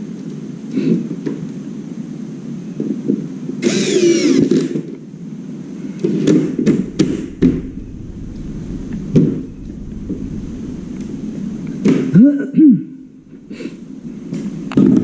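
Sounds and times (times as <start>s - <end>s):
high-pitched squeal: 6.6s - 15.0s.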